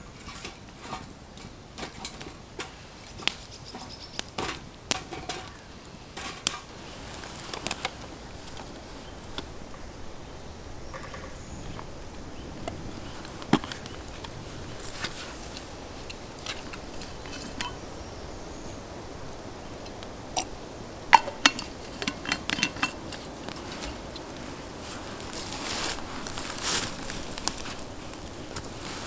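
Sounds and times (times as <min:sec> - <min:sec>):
faint steady background noise: 0:00.0 - 0:29.0.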